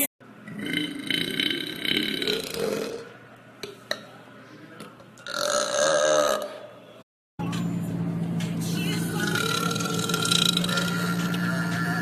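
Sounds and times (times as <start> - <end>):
woman burping: 5.2 - 6.6, 9.4 - 10.9.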